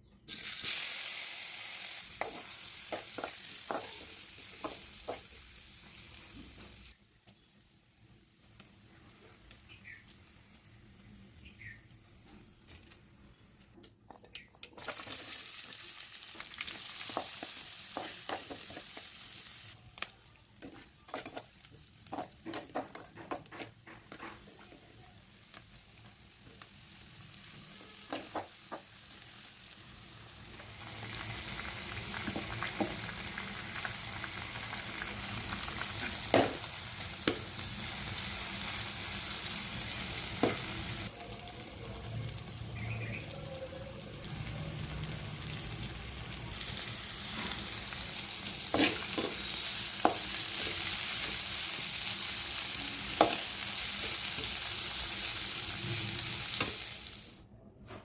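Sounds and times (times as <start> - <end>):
food sizzling in oil: 0.2 - 7.0, 14.8 - 57.4
utensil stirring in a pan: 2.0 - 5.4, 14.8 - 19.7, 20.6 - 24.8, 46.8 - 52.1.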